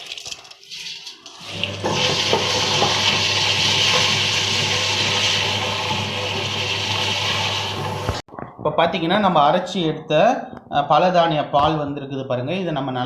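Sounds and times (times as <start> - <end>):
wet grinder running: 1.4 - 8.2.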